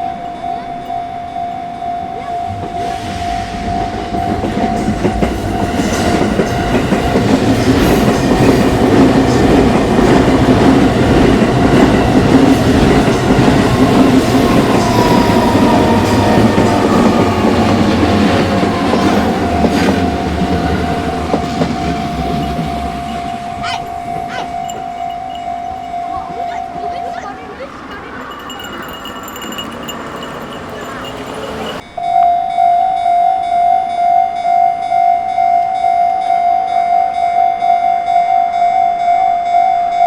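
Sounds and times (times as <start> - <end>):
level crossing warning bell: 0.0 - 3.8, 4.5 - 40.0
train running noise: 0.0 - 31.9
wheels clacking over rail joints: 5.2 - 31.8.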